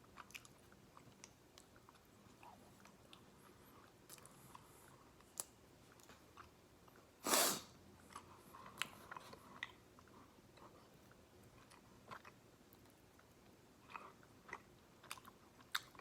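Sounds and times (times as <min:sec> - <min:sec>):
chewing fried chicken: 0:00.0 - 0:07.2, 0:08.0 - 0:16.0
loud hiss of noise: 0:07.2 - 0:07.7.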